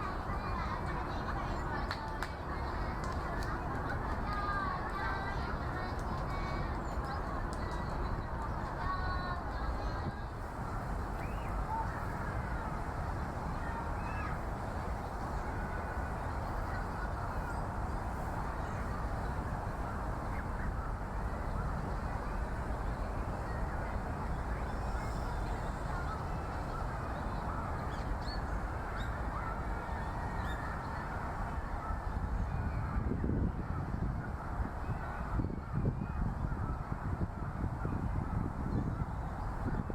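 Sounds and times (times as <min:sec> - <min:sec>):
faint high bird calls: 0:24.3 - 0:31.1.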